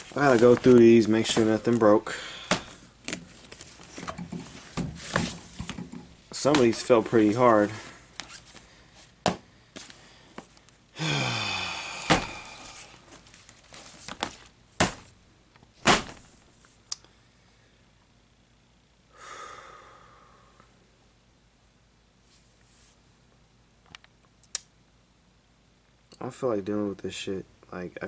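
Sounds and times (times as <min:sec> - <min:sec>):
vinyl records knocking and thudding: 0:00.0 - 0:08.3, 0:09.2 - 0:09.5, 0:14.0 - 0:15.2, 0:15.8 - 0:16.4
person sighing: 0:02.1 - 0:02.8, 0:11.0 - 0:13.0, 0:19.2 - 0:20.7.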